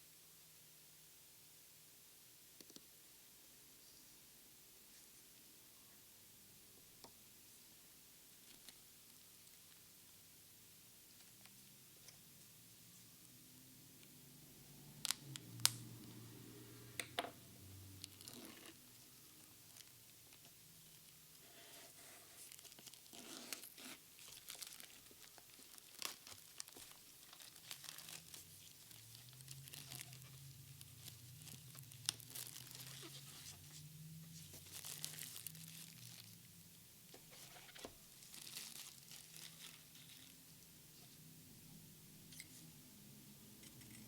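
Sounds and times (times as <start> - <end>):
plastic packaging tearing and crinkling: 18.0 - 18.8, 22.3 - 36.4, 37.3 - 40.4.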